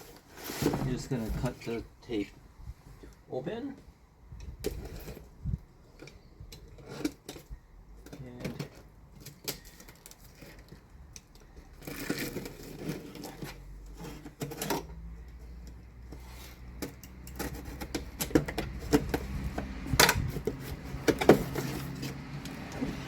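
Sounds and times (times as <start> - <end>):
cardboard box tearing and rustling: 0.0 - 1.5, 18.8 - 23.0
sharp clicks and knocks: 16.7 - 23.0.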